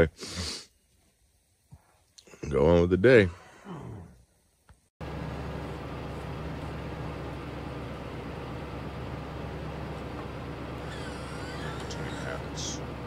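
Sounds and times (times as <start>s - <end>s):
low engine rumble: 5.0s - 13.0s.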